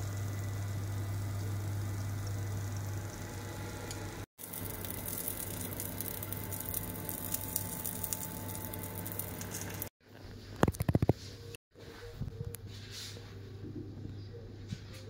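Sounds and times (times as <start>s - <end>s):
food sizzling in hot oil: 4.0s - 9.9s.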